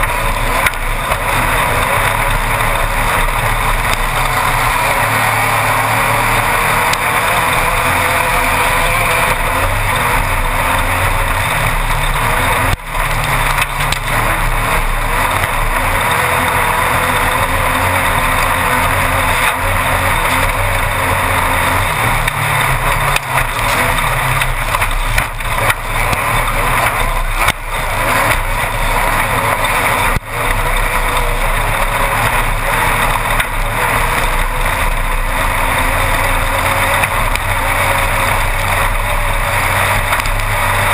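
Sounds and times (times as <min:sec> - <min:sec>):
race car engine running hard: 0:00.0 - 0:40.9
rough ground noise: 0:00.0 - 0:40.9.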